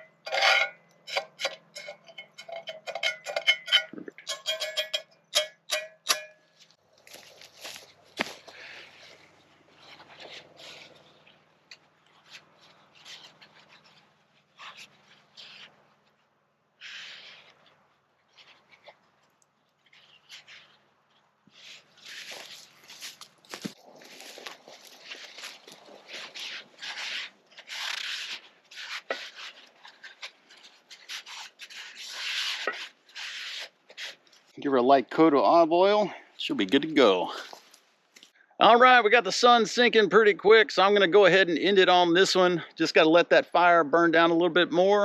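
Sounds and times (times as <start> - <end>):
scrubbing cast iron pot: 0.3 - 5.5.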